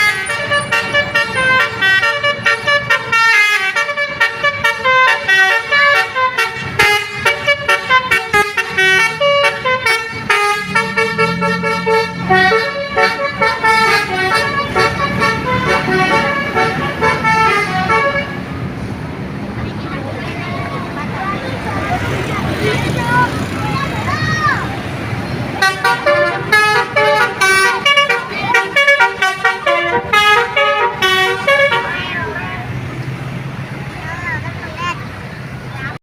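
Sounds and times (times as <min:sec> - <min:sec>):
multi-tone bus air horn tune: 0:00.0 - 0:18.6, 0:25.6 - 0:32.4.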